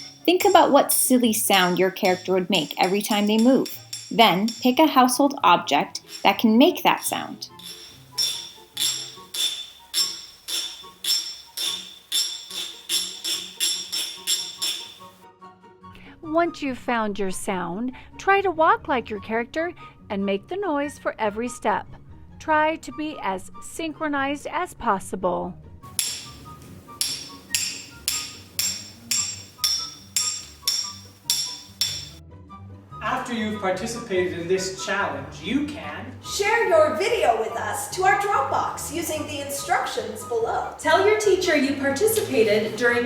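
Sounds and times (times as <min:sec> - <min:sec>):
bright jingling hits: 0:00.0 - 0:15.2, 0:26.0 - 0:32.2
household object clinking: 0:00.0 - 0:15.2, 0:25.9 - 0:32.2.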